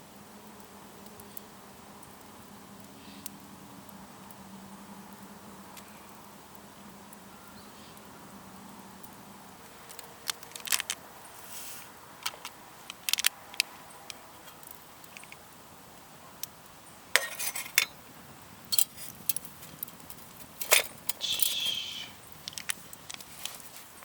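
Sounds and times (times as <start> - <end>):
small metal items clinking: 9.8 - 11.0, 17.2 - 18.0, 18.7 - 24.0
rustling scrapes: 10.4 - 11.9, 17.2 - 17.9, 22.6 - 24.0.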